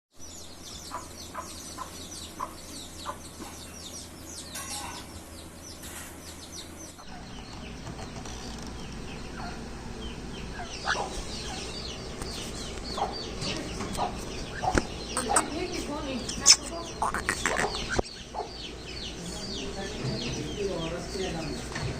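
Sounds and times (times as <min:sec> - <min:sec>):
birds chirping: 0:00.1 - 0:21.9
low clucking notes: 0:10.4 - 0:15.7, 0:16.3 - 0:18.5.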